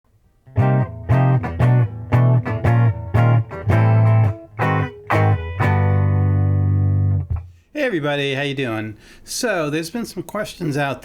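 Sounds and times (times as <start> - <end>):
electric guitar riff: 0.4 - 7.6.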